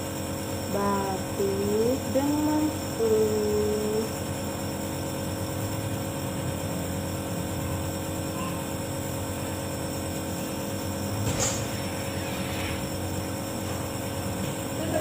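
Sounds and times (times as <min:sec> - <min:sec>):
nebulizer compressor humming: 0:00.0 - 0:15.0.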